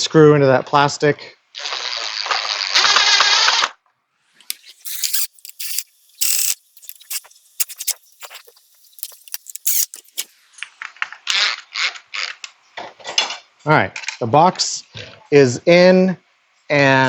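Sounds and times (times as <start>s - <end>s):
screwdriver clicking and scraping: 4.4s - 10.3s.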